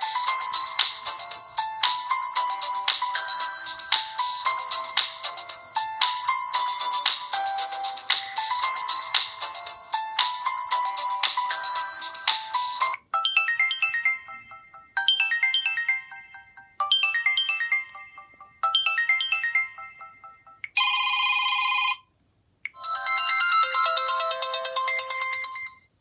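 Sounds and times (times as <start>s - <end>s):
phone ringtones: 13.2s - 22.1s, 22.7s - 25.9s
descending chime phrase: 22.8s - 25.8s
melodic tone: 22.8s - 25.9s.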